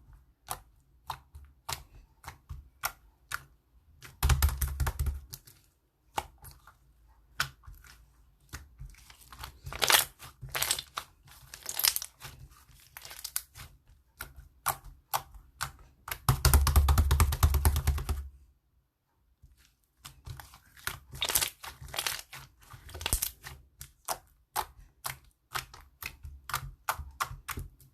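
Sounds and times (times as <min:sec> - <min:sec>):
slime clicking and popping: 0:09.7 - 0:12.2, 0:21.1 - 0:22.3, 0:22.9 - 0:27.8.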